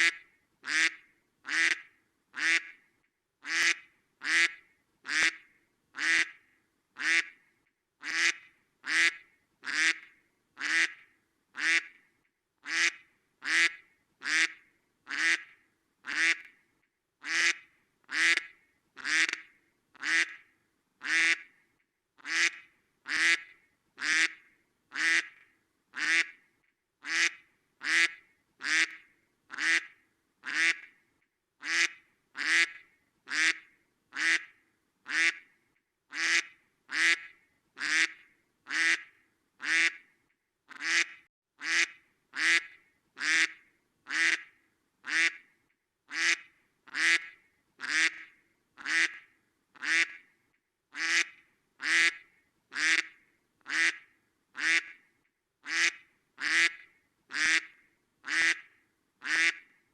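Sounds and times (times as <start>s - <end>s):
duck quacking: 0.0s - 2.8s, 3.4s - 5.4s, 6.0s - 6.4s, 7.0s - 7.4s, 8.0s - 11.0s, 11.6s - 12.0s, 12.6s - 15.5s, 16.1s - 16.5s, 17.2s - 20.4s, 21.0s - 21.5s, 22.2s - 25.4s, 26.0s - 26.4s, 27.0s - 30.9s, 31.6s - 33.6s, 34.2s - 34.5s, 35.1s - 35.4s, 36.1s - 40.0s, 40.7s - 45.4s, 46.1s - 49.2s, 49.8s - 50.2s, 51.0s - 54.0s, 54.6s - 55.0s, 55.6s - 59.7s.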